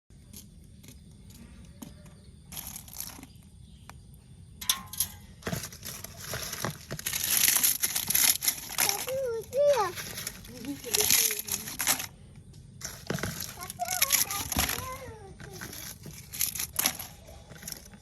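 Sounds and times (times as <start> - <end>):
crinkling rustling: 2.5 - 3.4, 4.6 - 12.2, 12.8 - 18.0
handling clicks and knocks: 4.6 - 18.0.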